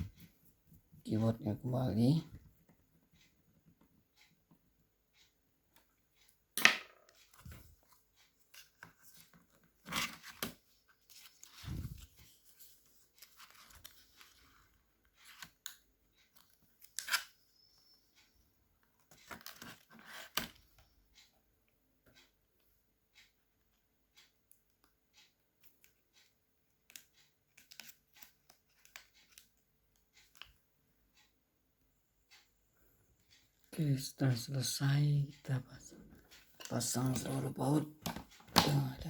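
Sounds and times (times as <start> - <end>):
plastic keyboard clicks and taps: 38.0 - 39.0.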